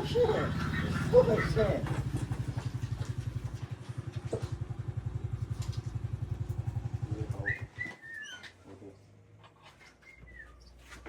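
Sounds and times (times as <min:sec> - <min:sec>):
small engine idling: 0:00.0 - 0:08.0.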